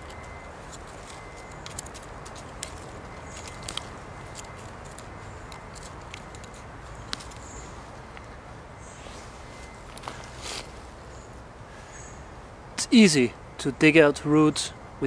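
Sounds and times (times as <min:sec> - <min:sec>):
rustling: 0:00.0 - 0:11.0
outdoor background noise: 0:00.0 - 0:15.0.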